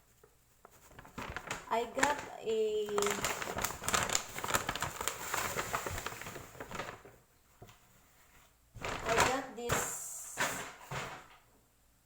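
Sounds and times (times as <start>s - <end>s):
shopping bag rustling and crinkling: 0.6s - 7.7s, 8.8s - 9.8s.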